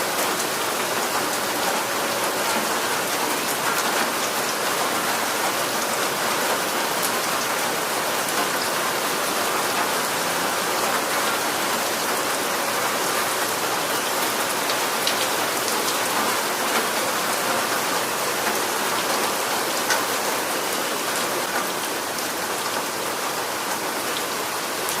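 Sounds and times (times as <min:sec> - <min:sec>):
steady rain hiss: 0:00.0 - 0:25.0
raindrops ticking: 0:14.2 - 0:19.1.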